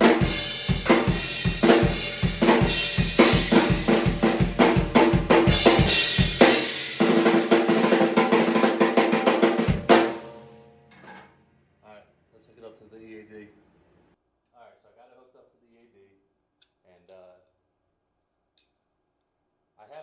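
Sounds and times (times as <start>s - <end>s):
drum kit groove: 0.0s - 10.4s
loud drum hit ringing out: 0.0s - 10.5s.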